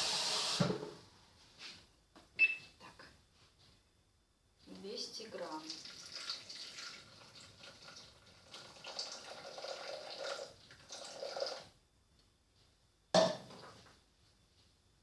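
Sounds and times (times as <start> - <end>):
water pouring into bowl: 5.4 - 11.7.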